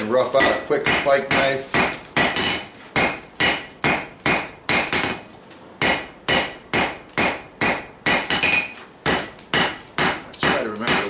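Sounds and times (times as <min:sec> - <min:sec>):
hammer ringing on anvil: 0:02.2 - 0:05.2.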